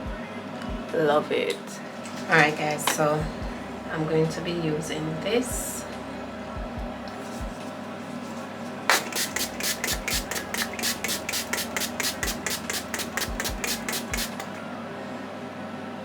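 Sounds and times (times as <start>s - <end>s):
spray pump mist bursts: 8.9s - 14.6s.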